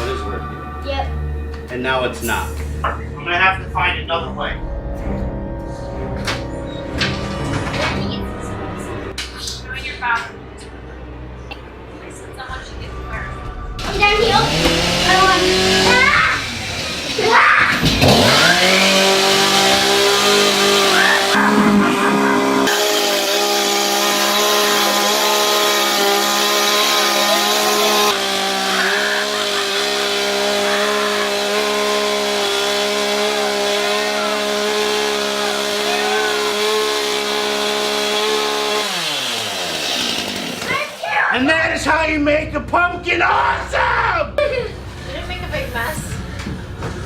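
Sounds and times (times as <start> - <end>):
chainsaw running: 13.8 - 41.1.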